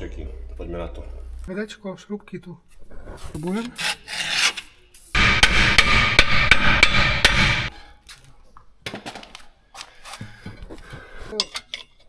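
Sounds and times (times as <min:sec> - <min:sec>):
impact wrench hammering: 0:03.4 - 0:07.7.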